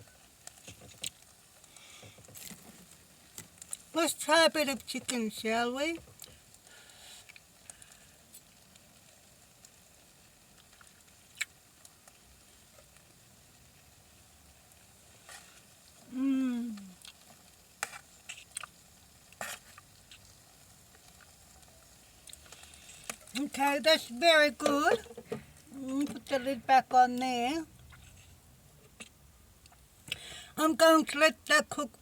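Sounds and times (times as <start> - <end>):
chicken sizzling: 0.0 - 32.0
person humming mmm: 16.0 - 17.0.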